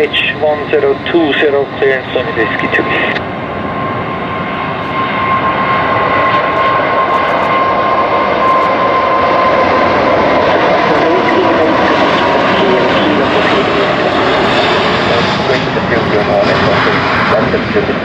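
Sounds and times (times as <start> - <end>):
jet engine noise: 0.0 - 18.0.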